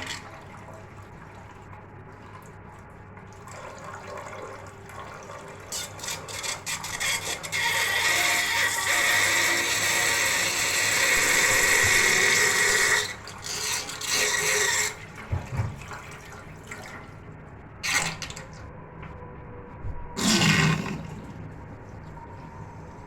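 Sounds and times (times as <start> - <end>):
drain gurgling slurps: 0.0 - 18.6, 20.2 - 22.5
water draining with rushing hiss: 7.4 - 17.1.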